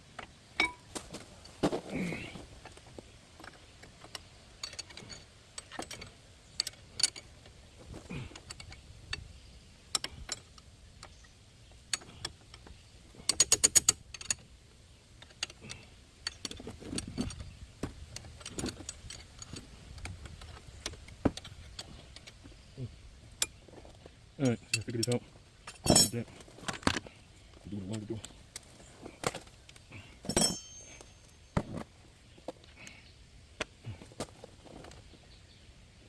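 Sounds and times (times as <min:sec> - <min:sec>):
hand tools clinking and knocking: 0:00.6 - 0:02.8, 0:23.3 - 0:33.0.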